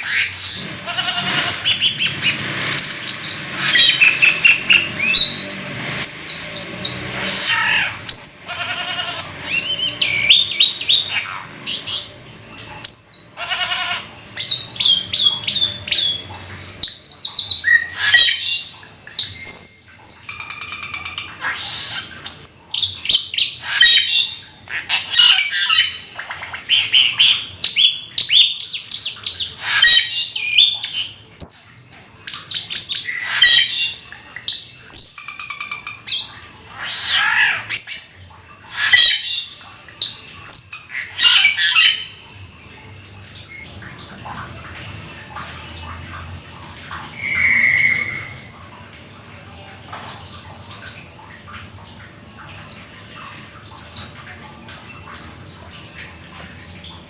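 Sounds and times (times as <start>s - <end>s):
starling singing: 0.0s - 42.2s, 47.1s - 48.6s.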